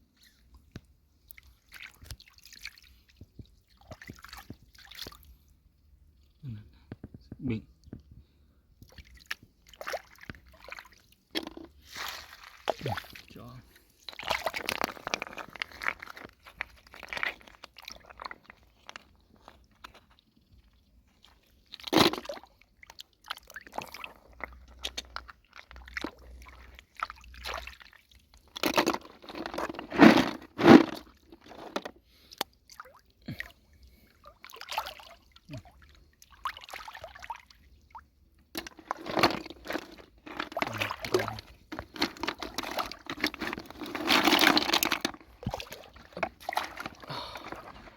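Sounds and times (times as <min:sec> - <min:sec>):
water sloshing and splashing: 0:01.2 - 0:05.6, 0:08.8 - 0:47.9
crunchy scraping in mud: 0:28.6 - 0:31.9, 0:38.6 - 0:47.9.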